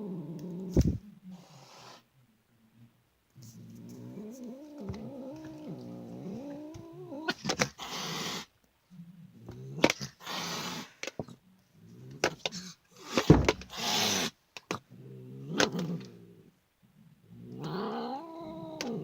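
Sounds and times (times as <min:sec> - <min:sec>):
cat growling: 0:00.0 - 0:01.1, 0:03.4 - 0:11.0, 0:11.8 - 0:19.0
cat hissing: 0:00.4 - 0:02.0, 0:03.5 - 0:08.5, 0:10.0 - 0:11.0, 0:12.5 - 0:14.4.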